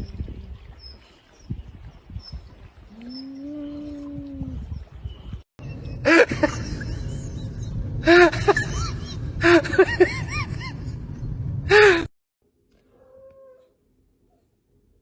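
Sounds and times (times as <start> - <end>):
steady low rumble: 5.7 - 11.8.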